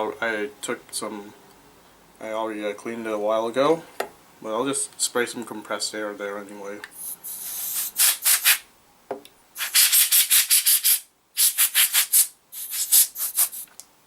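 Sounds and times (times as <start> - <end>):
compressed air can spraying: 7.0 - 8.6, 9.6 - 13.7.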